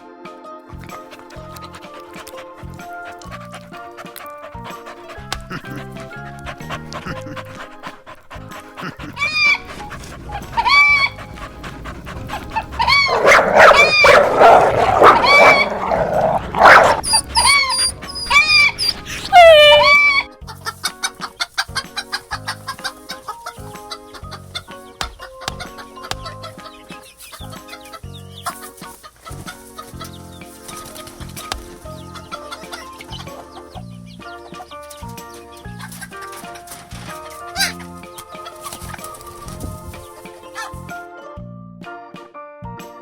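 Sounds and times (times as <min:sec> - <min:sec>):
chicken clucking: 0:08.8 - 0:34.8.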